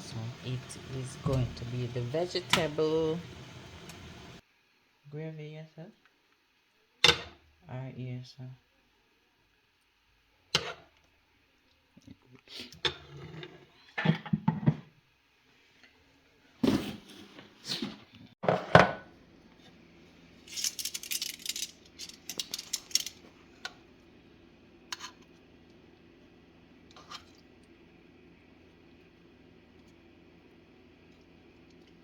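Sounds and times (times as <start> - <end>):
faint steady hum: 0.0 - 4.4.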